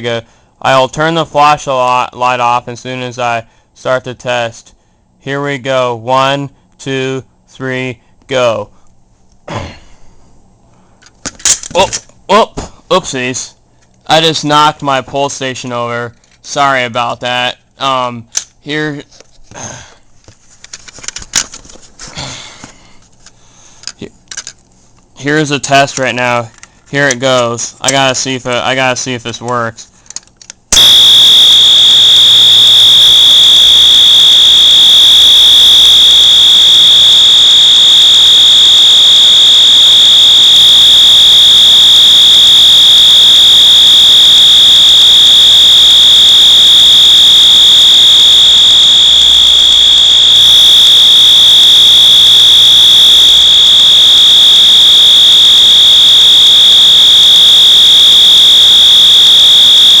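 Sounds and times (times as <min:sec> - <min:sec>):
high-pitched fire alarm horn: 0:30.8 - 1:00.0.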